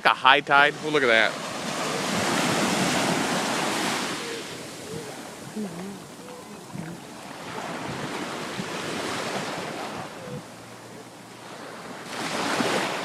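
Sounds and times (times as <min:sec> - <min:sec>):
ocean surf breaking: 0:00.0 - 0:13.0.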